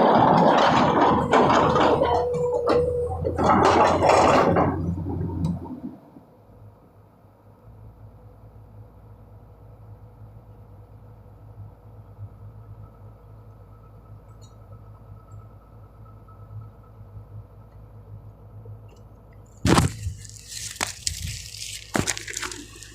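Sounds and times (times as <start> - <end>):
excavator diesel engine idling: 0.0 - 22.9
loud rustling: 19.6 - 22.9
sharp crackles: 19.6 - 22.9.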